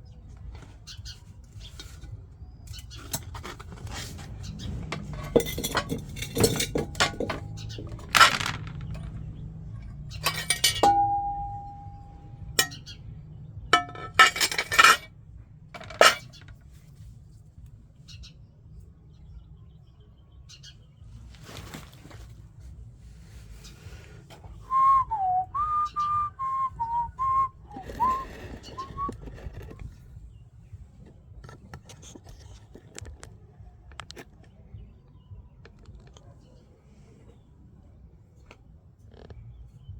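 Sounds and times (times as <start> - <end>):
broken glass clinking: 5.2 - 9.1, 10.2 - 12.8, 13.8 - 15.1, 15.8 - 16.4
person whistling a tune: 24.7 - 29.2.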